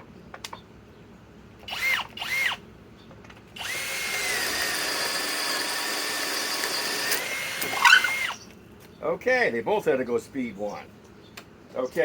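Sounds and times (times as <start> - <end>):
cordless drill whining: 1.6 - 2.6, 3.6 - 8.4.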